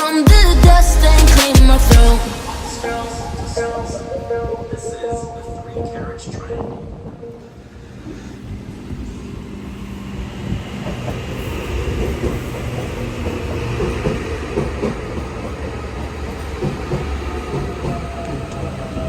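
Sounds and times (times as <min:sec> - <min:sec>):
train rumble: 0:00.3 - 0:19.0
train wheels clicking: 0:08.0 - 0:19.0.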